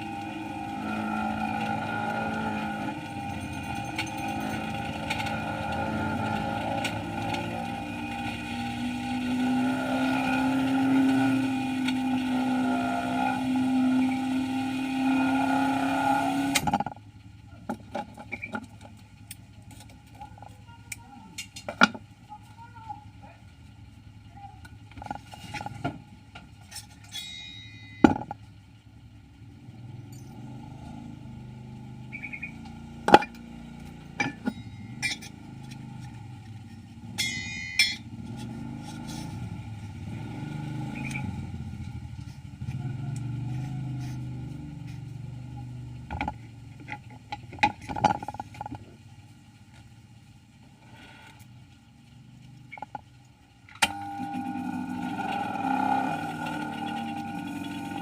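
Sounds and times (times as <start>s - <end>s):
winding machine humming: 0.0s - 16.6s, 53.8s - 58.0s.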